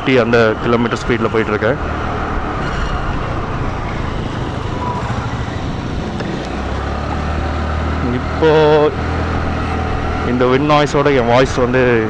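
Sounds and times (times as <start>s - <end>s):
wind rushing over microphone: 0.0s - 11.9s
motorcycle and road rumble: 0.0s - 12.0s.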